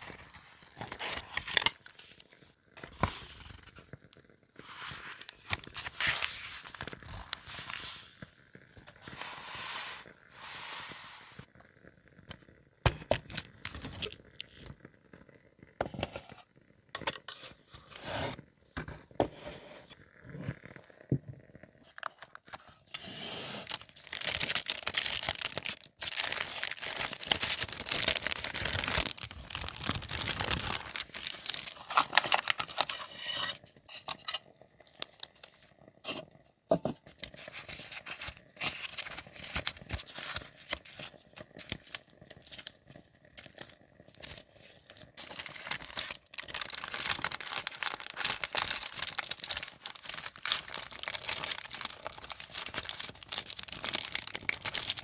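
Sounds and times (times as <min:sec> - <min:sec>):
paper rustling and tearing: 0:23.0 - 0:33.6, 0:37.3 - 0:42.7, 0:44.2 - 0:55.0.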